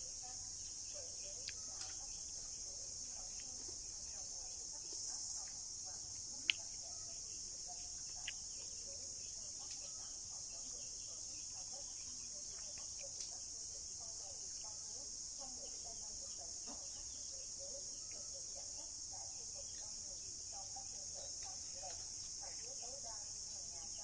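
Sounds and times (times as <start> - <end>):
insects chirring: 0.0 - 24.0
faint ticks: 0.6 - 4.0, 4.8 - 13.6.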